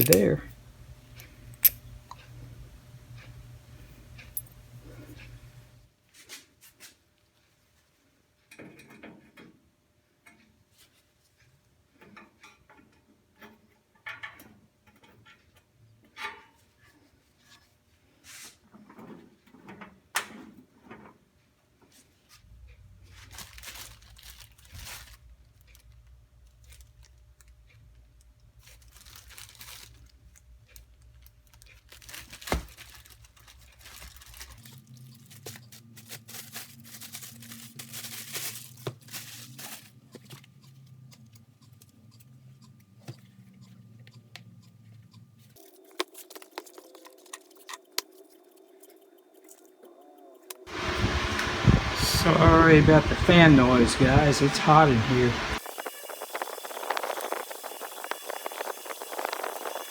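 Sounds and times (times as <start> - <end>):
low fan hum: 0.0 - 5.9, 50.7 - 59.9
rustling and tearing material: 23.1 - 25.2, 28.6 - 30.2, 31.5 - 40.6, 45.5 - 50.5.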